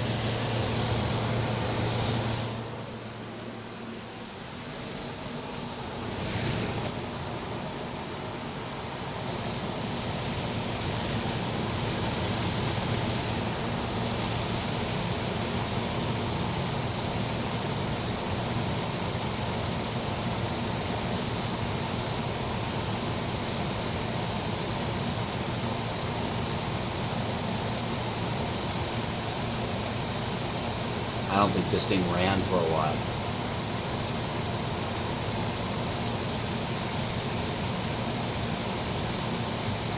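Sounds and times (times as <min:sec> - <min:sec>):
compressor hum: 0:00.0 - 0:39.9
dehumidifier fan blowing: 0:00.0 - 0:39.9.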